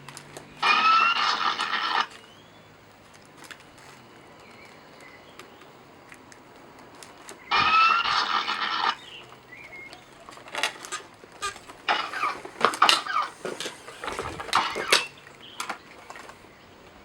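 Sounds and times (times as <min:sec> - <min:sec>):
sharp mechanical clicks: 0:00.0 - 0:02.4
short motor whirs: 0:00.4 - 0:02.6, 0:07.5 - 0:15.2.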